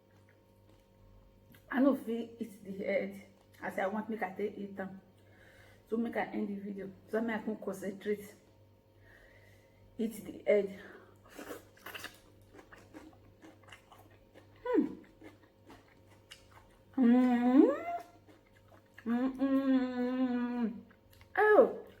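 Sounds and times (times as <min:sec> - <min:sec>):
woman humming while eating: 0:14.6 - 0:15.3, 0:16.9 - 0:18.3, 0:19.0 - 0:21.8.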